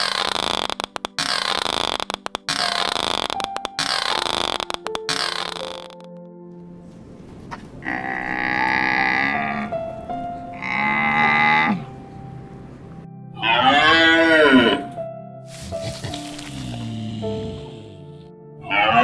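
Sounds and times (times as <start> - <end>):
cow mooing: 7.8 - 9.9, 10.5 - 12.0, 13.4 - 14.9, 15.5 - 19.0.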